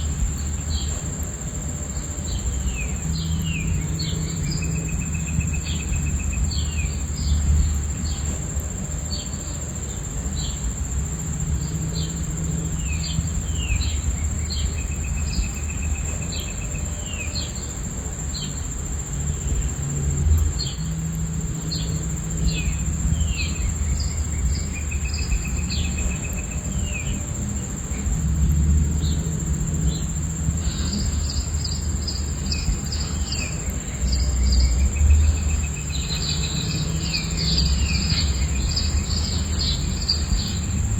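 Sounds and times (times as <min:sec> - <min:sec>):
crickets chirping: 0:00.0 - 0:40.9
birds chirping and trilling: 0:29.9 - 0:40.9.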